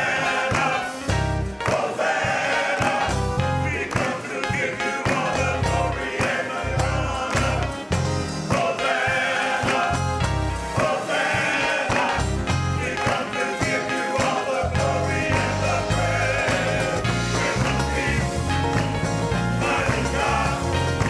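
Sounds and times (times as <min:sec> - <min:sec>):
band playing: 0:00.0 - 0:21.0
choir singing gospel: 0:00.0 - 0:21.0
held bass notes: 0:01.1 - 0:01.6, 0:03.1 - 0:03.9, 0:05.4 - 0:08.5, 0:09.9 - 0:10.8, 0:12.2 - 0:13.0, 0:14.6 - 0:21.0.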